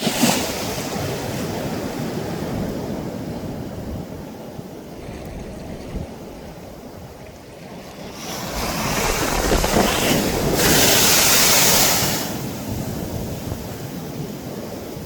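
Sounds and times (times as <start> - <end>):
sea waves breaking on shore: 4.7 - 15.0.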